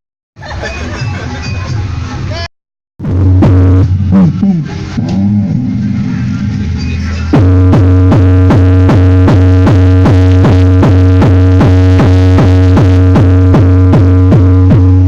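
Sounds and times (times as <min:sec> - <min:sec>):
loud electronic bass music: 0:03.0 - 0:15.0.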